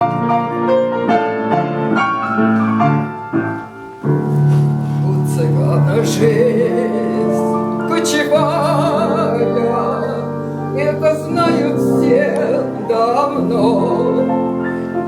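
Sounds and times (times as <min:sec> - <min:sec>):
piano accompaniment: 0:00.0 - 0:15.0
woman singing operatically: 0:05.0 - 0:14.6.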